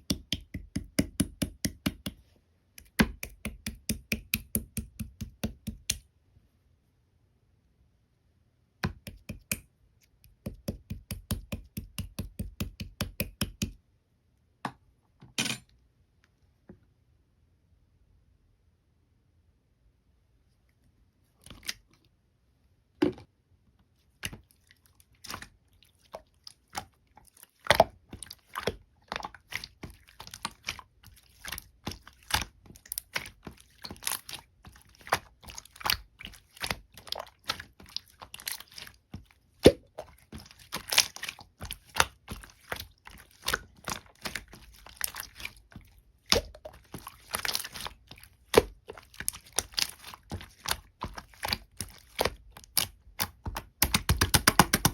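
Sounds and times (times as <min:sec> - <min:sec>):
slime squeezed sticky pops: 0:51.5 - 0:54.9.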